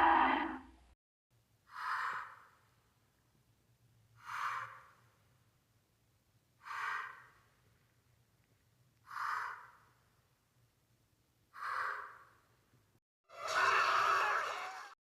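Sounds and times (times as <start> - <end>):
monster roar: 0.0 - 0.7.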